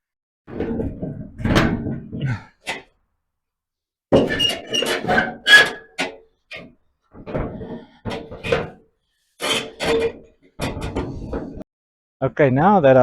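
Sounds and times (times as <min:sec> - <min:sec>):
steel plate clanking and scraping: 0:00.5 - 0:02.9, 0:04.1 - 0:11.6.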